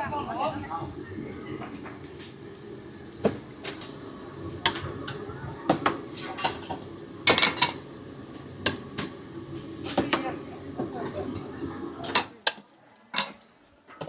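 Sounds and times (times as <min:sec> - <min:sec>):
hubbub of busy room: 0:00.0 - 0:13.1.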